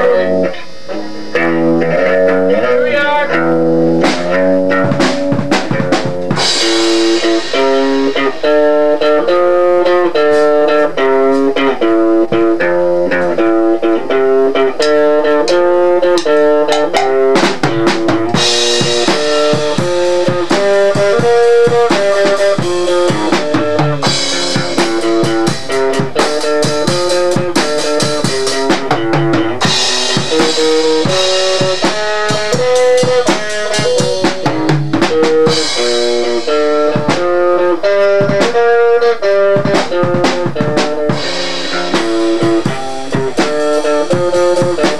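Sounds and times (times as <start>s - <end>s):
cymbals: 0.0s - 11.6s, 14.8s - 38.8s
drum kit: 0.0s - 44.9s
guitar riff: 0.0s - 44.9s.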